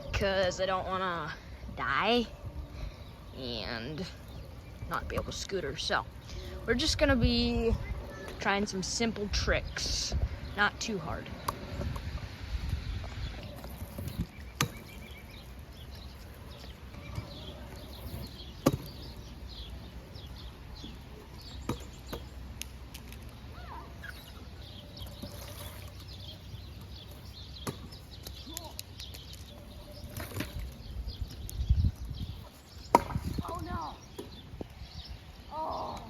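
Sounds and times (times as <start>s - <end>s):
birds chirping: 0.0s - 36.0s
scooter clacking on pavement: 13.0s - 23.3s.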